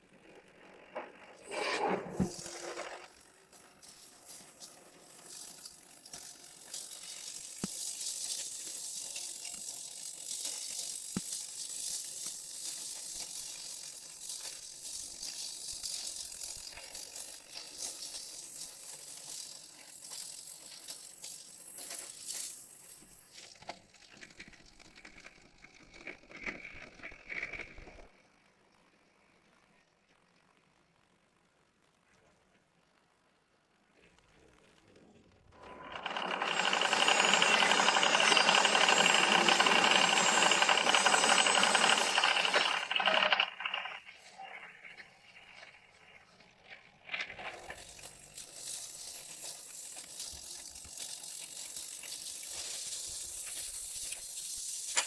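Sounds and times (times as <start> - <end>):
mechanical clicking and rattling: 2.3 - 28.0, 35.6 - 44.4, 47.1 - 55.0.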